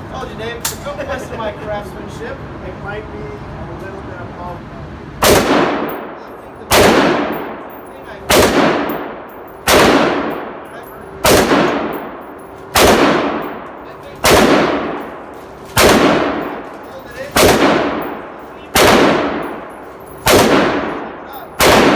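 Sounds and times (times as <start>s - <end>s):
rifle shots with echo: 5.2s - 21.9s.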